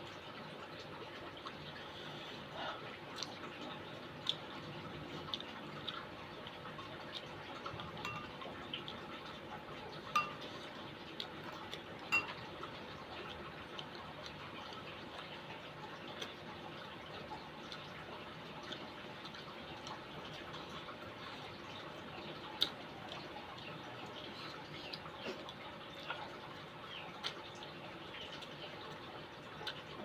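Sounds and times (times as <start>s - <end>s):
spoon clinking against bowl: 8.0s - 8.4s, 10.1s - 10.4s, 12.1s - 12.4s.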